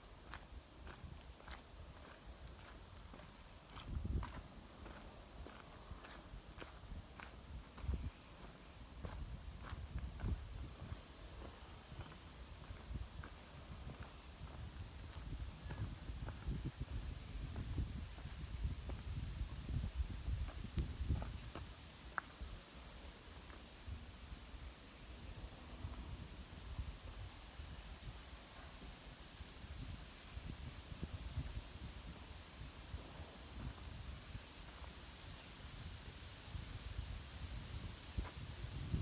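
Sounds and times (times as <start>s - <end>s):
high-pitched insect chorus: 0.0s - 39.0s
footsteps on forest trail: 0.3s - 7.4s.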